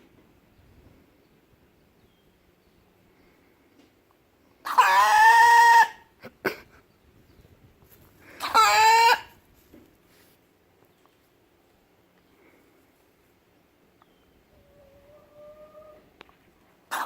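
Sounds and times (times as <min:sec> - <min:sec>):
chicken calling: 0:04.6 - 0:06.1, 0:08.4 - 0:09.4, 0:14.5 - 0:16.1.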